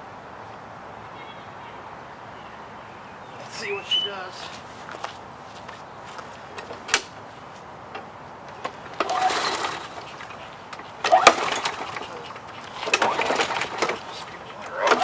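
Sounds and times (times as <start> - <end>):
recoil starter pull whirring: 8.5 - 15.0.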